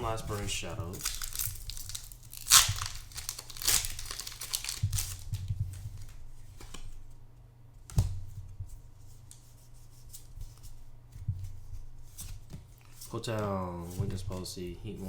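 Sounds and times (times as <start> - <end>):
foil wrapper tearing and crinkling: 0.0 - 5.4.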